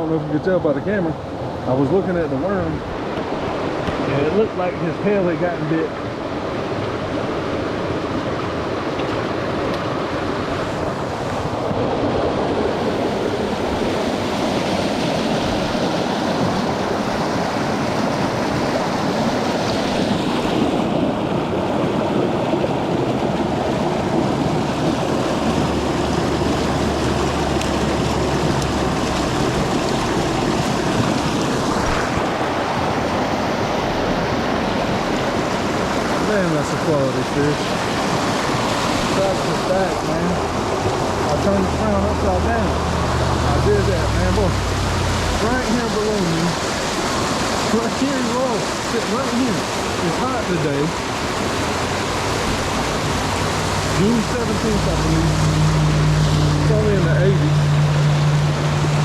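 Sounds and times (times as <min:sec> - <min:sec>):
water rushing over rocks: 0:00.0 - 0:59.0.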